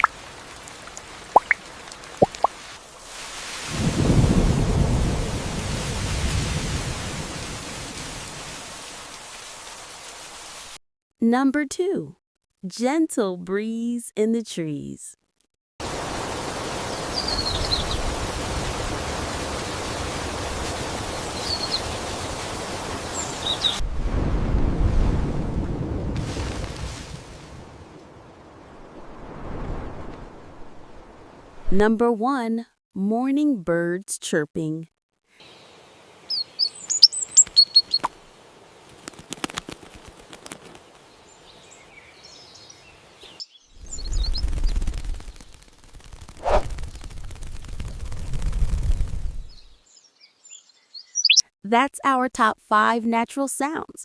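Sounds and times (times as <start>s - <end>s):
breeze through tree leaves: 0.0s - 10.8s, 15.8s - 24.3s, 26.1s - 32.4s, 35.2s - 51.5s
gusty wind rumble: 3.7s - 7.9s, 23.8s - 31.8s, 47.7s - 49.7s
faint bird chirps: 35.4s - 38.2s, 49.5s - 51.5s
sharp bird clicks: 36.3s - 38.2s, 51.2s - 51.4s.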